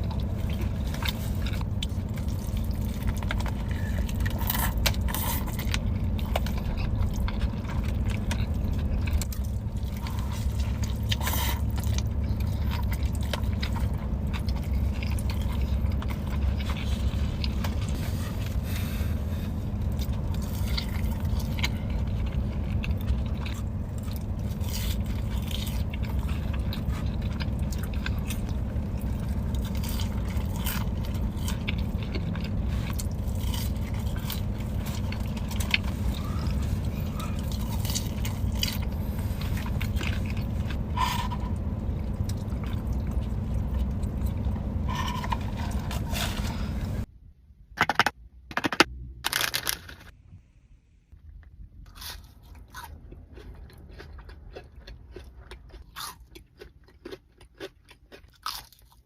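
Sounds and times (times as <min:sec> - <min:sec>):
wet chewing: 0:00.0 - 0:18.8, 0:19.4 - 0:47.1, 0:51.9 - 0:59.0
steady low hum: 0:00.0 - 0:59.0
crunchy bites: 0:51.9 - 0:59.0.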